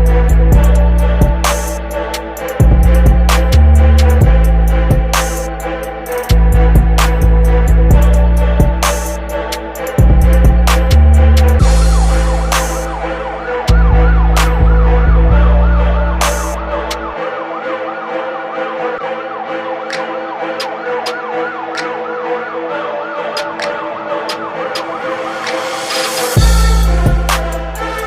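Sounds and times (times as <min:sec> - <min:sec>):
electronic music: 0:00.0 - 0:28.0
siren-like synth whoop: 0:11.6 - 0:18.6.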